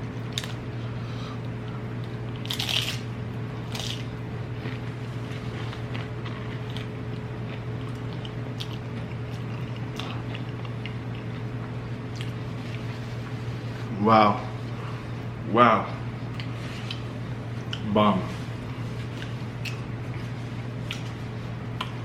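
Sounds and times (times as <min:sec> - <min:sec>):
steady low hum: 0:00.0 - 0:22.0
person chewing crunchy food: 0:02.0 - 0:13.4, 0:18.7 - 0:22.0.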